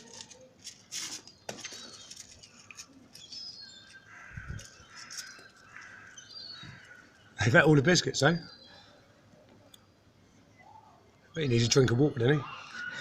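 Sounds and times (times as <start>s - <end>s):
seagulls calling: 3.3s - 7.6s, 10.6s - 13.0s.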